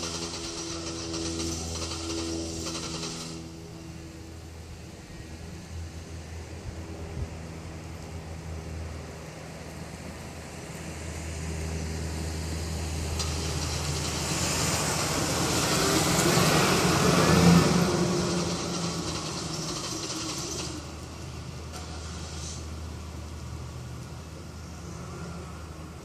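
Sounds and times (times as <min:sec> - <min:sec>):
rushing noise: 0:12.8 - 0:23.1.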